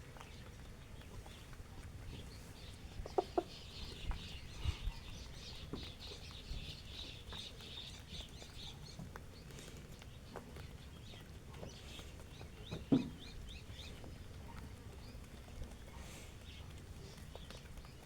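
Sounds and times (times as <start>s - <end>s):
hens clucking: 2.1s - 6.0s.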